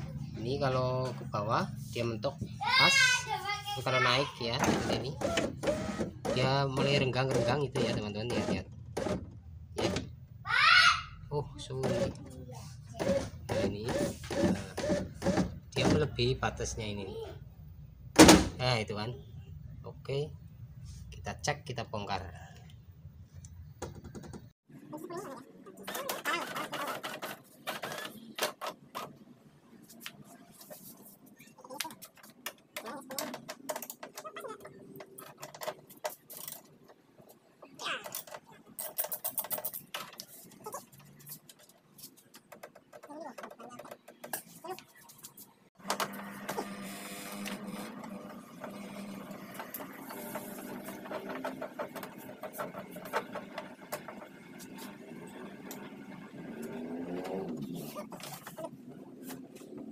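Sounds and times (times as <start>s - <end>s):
metal parts clicking and rattling: 32.8s - 36.9s, 38.0s - 41.8s.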